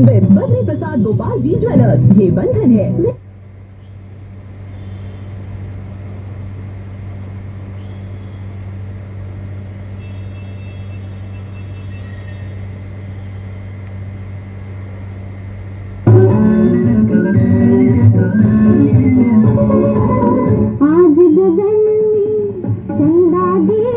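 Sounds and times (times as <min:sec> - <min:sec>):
steady low hum: 0:00.0 - 0:23.9
loud music: 0:16.1 - 0:20.8.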